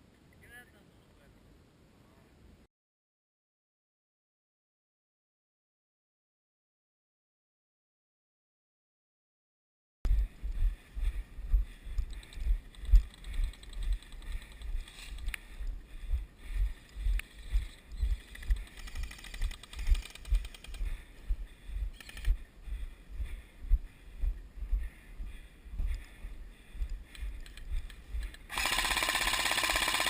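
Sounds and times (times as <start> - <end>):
footsteps walking: 10.1 - 28.4
sharp clicks: 11.9 - 15.4, 16.8 - 20.9, 21.9 - 22.4, 26.8 - 30.0.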